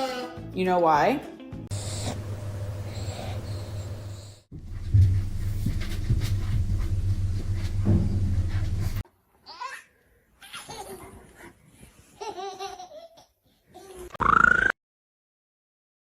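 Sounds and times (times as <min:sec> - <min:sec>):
low steady rumble: 0:02.2 - 0:09.0.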